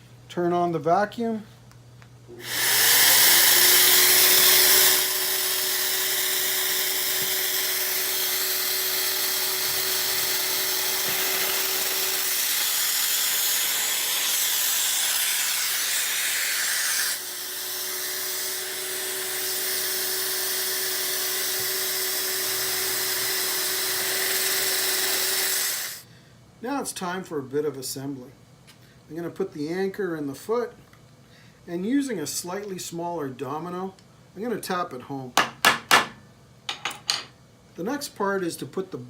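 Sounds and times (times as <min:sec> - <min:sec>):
dust extractor running: 0:02.3 - 0:26.0
electric drill whining: 0:02.4 - 0:26.0.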